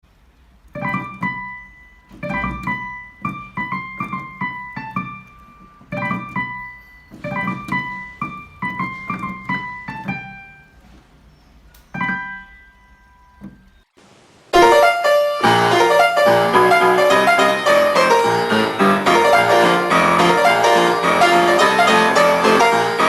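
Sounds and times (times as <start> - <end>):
piano-like keyboard music: 0.6 - 10.9, 11.7 - 13.8, 14.6 - 23.0.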